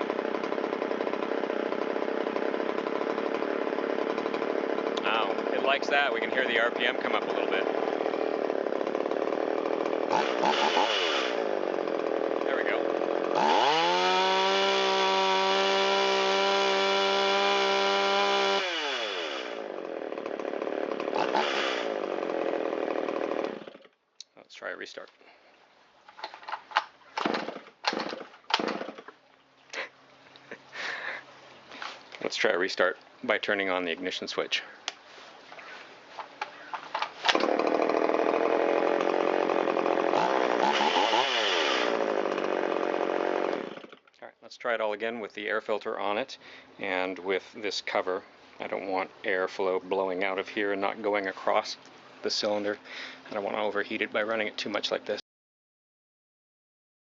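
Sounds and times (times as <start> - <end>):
chainsaw engine revving: 0.0 - 23.9, 27.2 - 29.1, 30.7 - 31.2, 36.6 - 44.0.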